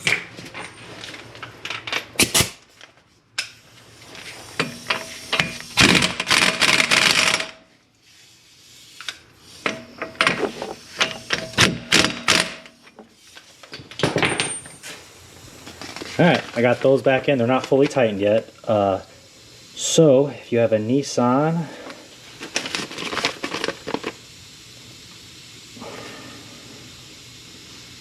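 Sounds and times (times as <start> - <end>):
power tool rattling: 4.6 - 7.6, 9.6 - 12.7.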